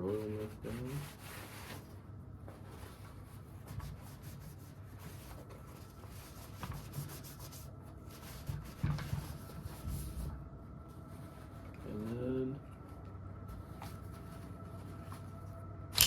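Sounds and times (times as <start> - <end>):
rubbing and scraping a rifle: 0.0 - 2.0.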